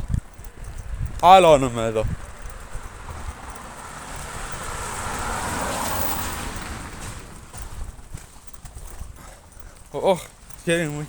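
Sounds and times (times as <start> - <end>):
wind buffeting microphone: 0.0 - 11.0
car tyres on wet road: 0.6 - 9.2.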